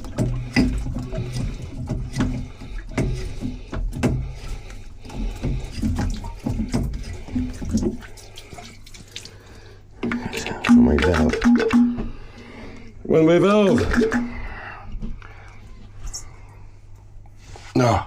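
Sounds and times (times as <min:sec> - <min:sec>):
water splashing and sloshing: 0:00.0 - 0:12.5.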